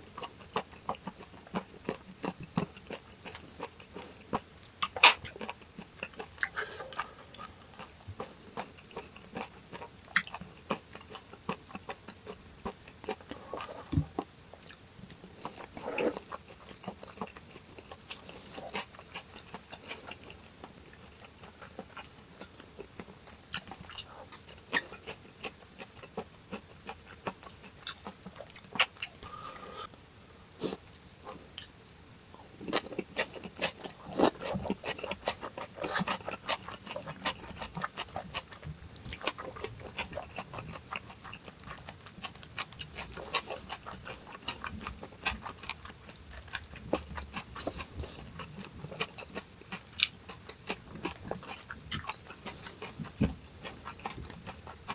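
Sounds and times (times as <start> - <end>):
person chewing food: 0.1 - 30.0, 30.6 - 54.9
mouth smacks: 6.4 - 7.9.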